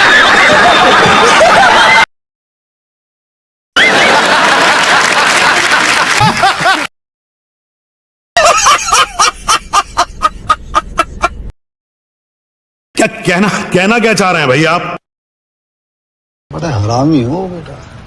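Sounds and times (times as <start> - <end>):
loud laughter: 0.0 - 2.1, 3.8 - 6.9, 8.4 - 11.5
rhythmic cackling laugh: 0.0 - 2.1, 3.8 - 6.9, 8.4 - 11.5.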